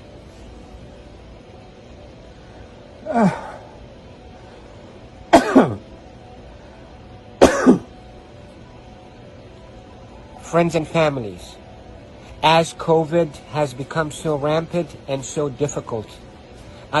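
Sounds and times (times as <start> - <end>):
man coughing: 5.3 - 5.8, 7.4 - 7.9.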